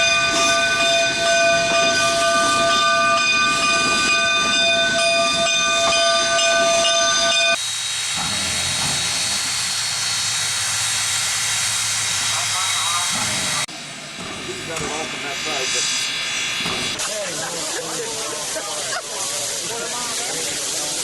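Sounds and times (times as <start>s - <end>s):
steam locomotive chime whistle: 0.0s - 7.6s
steam hissing: 7.5s - 21.0s.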